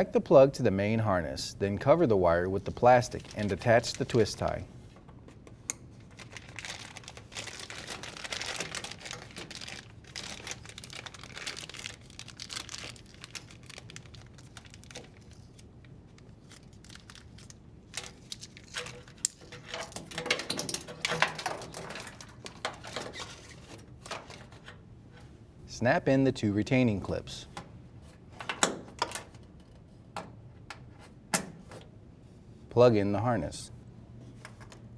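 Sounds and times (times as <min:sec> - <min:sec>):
plastic sheeting crinkling: 0:02.8 - 0:04.6, 0:06.0 - 0:20.4.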